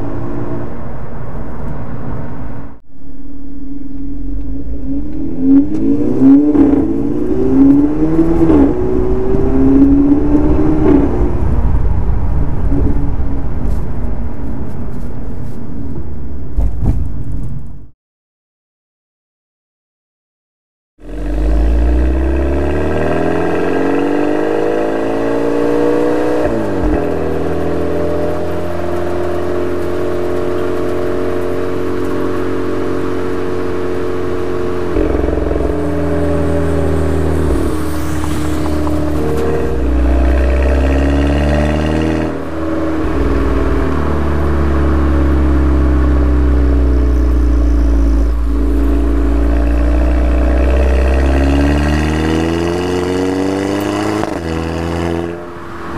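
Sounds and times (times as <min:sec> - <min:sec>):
car engine revving while driving: 0:03.9 - 0:13.2, 0:21.0 - 0:55.9.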